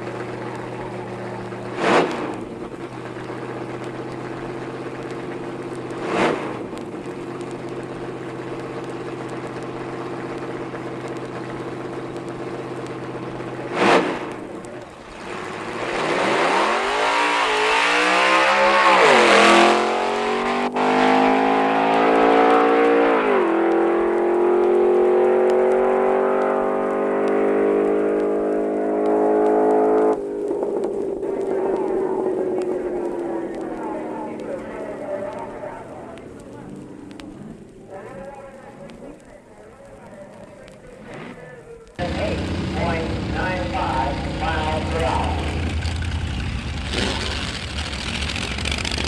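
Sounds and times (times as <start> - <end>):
car engine idling loudly: 0.0 - 16.1, 41.9 - 49.0
car accelerating hard: 0.0 - 37.7, 41.9 - 49.0
engine bursts: 0.0 - 49.0.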